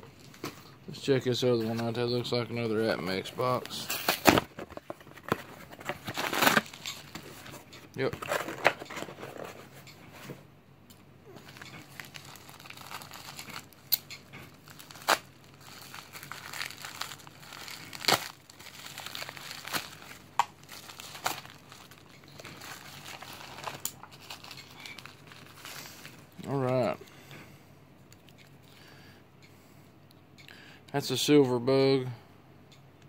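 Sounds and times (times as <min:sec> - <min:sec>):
packing material crinkling: 0:03.1 - 0:09.7, 0:11.3 - 0:26.9.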